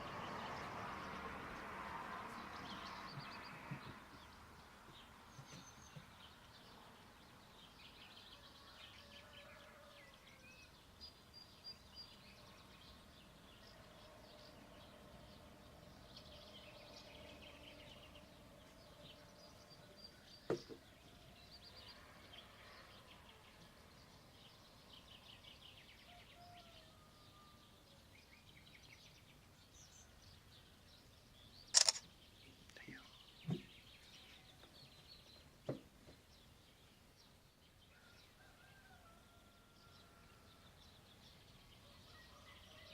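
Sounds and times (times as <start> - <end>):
small birds chirping: 28.0 - 38.5
sharp click: 31.8 - 32.0.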